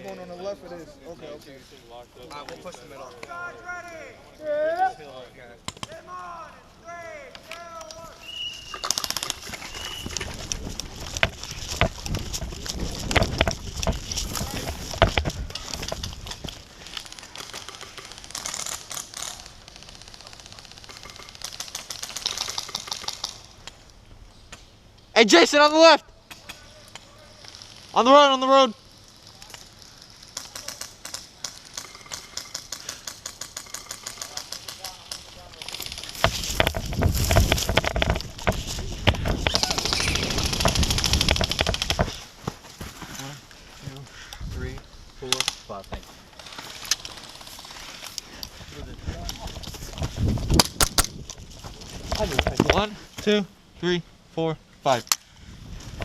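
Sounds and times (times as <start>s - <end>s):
handling and movement noise: 7.3s - 25.0s, 28.9s - 53.3s, 55.0s - 56.0s
airsoft guns firing bursts: 8.7s - 10.2s, 39.5s - 42.2s.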